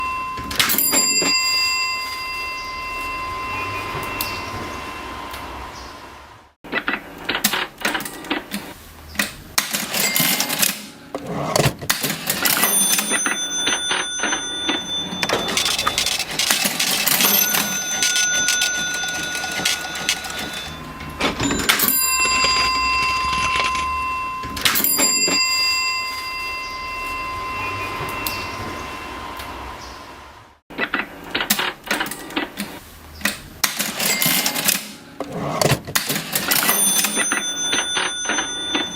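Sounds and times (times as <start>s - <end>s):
ringing tone: 0.0s - 5.2s, 12.6s - 29.2s
cash register bell ringing: 0.0s - 5.3s, 9.6s - 29.4s, 33.7s - 38.9s
cash register keys clattering: 0.4s - 1.8s, 9.6s - 25.9s, 33.6s - 38.9s.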